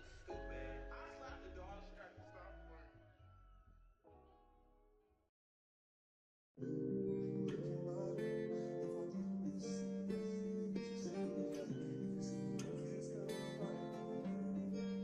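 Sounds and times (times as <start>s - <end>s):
strummed acoustic guitar: 7.2s - 15.0s.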